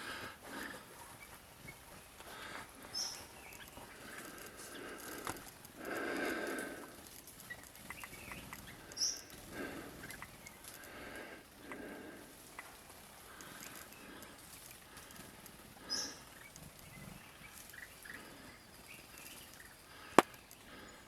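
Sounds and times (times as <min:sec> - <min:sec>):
man breathing heavily: 0:00.0 - 0:07.0, 0:08.8 - 0:10.0, 0:10.7 - 0:12.4, 0:19.8 - 0:21.0
high bird chirps: 0:07.4 - 0:09.4.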